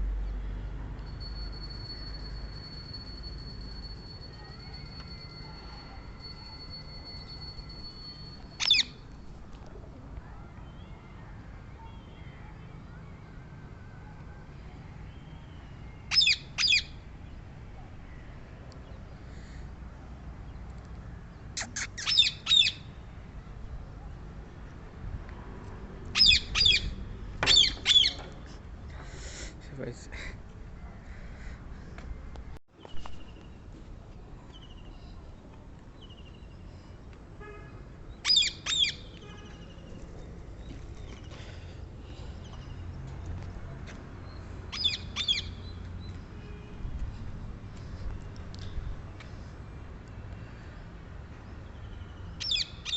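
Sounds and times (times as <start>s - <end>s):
parakeet high-pitched calls: 8.6s - 8.9s, 16.1s - 16.9s, 21.8s - 22.9s, 26.2s - 28.2s, 38.2s - 39.0s, 44.7s - 45.5s, 52.4s - 52.9s
parakeet screeching: 21.8s - 22.8s, 26.2s - 26.8s.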